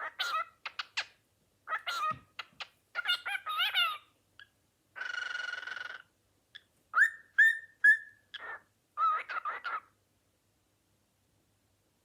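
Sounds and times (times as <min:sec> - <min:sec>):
cockatiel calling: 0:00.0 - 0:01.1, 0:01.7 - 0:09.9.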